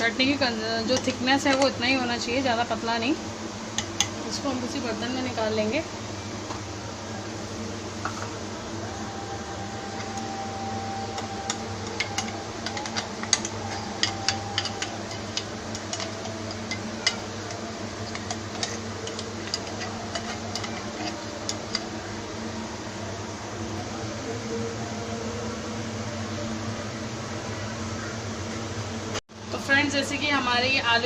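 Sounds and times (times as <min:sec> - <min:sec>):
fan hum: 0:00.0 - 0:31.0
spoon scraping a jar: 0:11.2 - 0:22.0.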